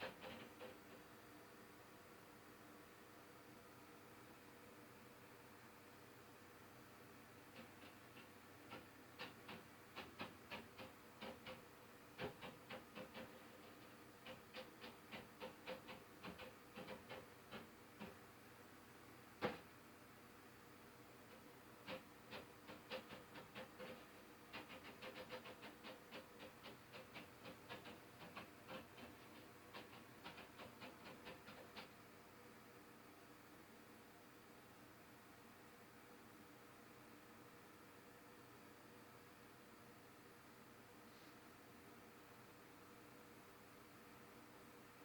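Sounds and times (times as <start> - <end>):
faint tapping through ceiling: 0.0 - 1.2, 7.4 - 18.3, 19.4 - 19.8, 21.2 - 32.0.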